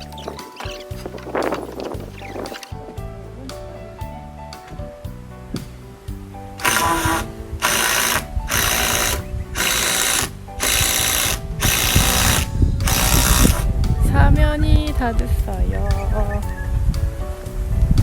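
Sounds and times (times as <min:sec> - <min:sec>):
background music: 0:00.0 - 0:18.0
cordless drill driving screws: 0:06.6 - 0:13.6.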